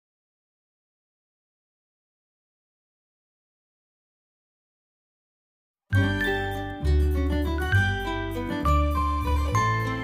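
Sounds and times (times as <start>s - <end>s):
light instrumental tune: 5.9s - 10.0s.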